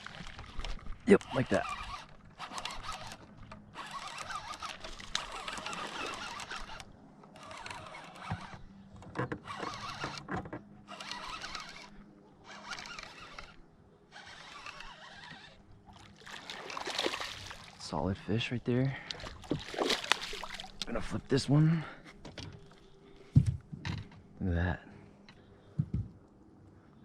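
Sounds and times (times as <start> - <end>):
fishing reel being cranked: 0.2 - 8.6, 9.4 - 10.3, 10.9 - 15.6.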